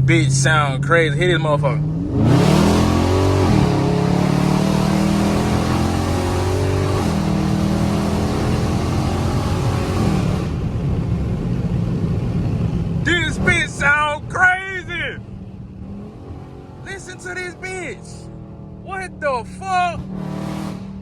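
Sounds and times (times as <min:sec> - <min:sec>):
raspy car exhaust accelerating: 0:15.2 - 0:21.0.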